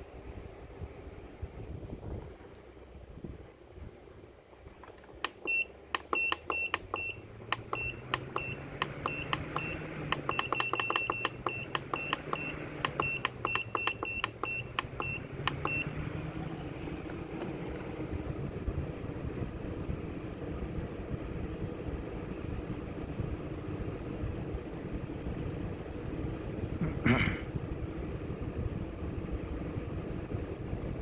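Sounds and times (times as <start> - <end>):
fan motor humming: 4.5 - 26.8
short high beeps with clicks: 5.3 - 15.9.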